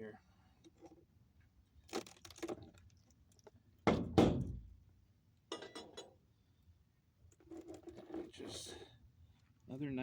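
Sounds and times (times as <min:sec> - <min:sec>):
rattle of wooden knocks: 0:03.9 - 0:04.6.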